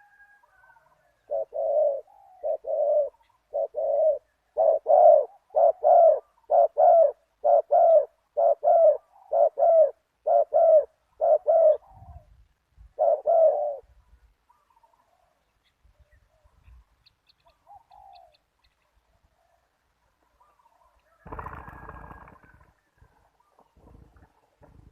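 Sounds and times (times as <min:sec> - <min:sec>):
dove cooing: 0:00.0 - 0:13.9, 0:17.4 - 0:18.4, 0:20.4 - 0:22.7.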